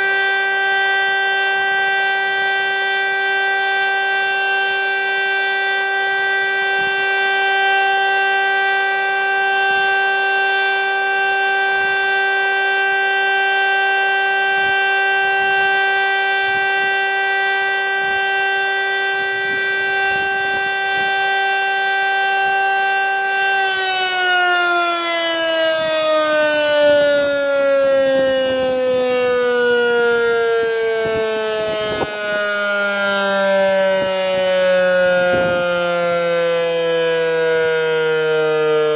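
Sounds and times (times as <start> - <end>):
electric motor siren: 0.0 - 38.9.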